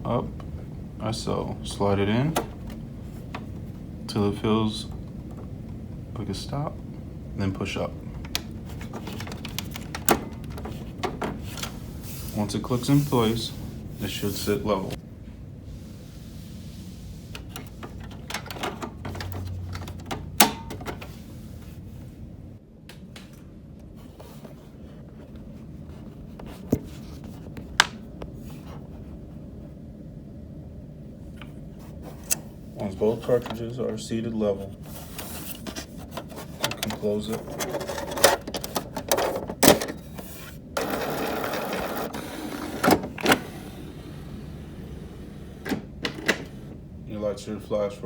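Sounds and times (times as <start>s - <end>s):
printer mechanism running: 36.2s - 46.8s.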